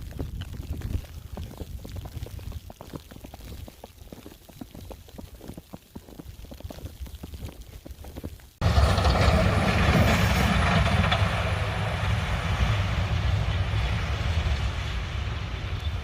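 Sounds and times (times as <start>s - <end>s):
heavy truck engine rumbling: 8.6s - 16.0s
steady rushing noise: 8.6s - 16.0s.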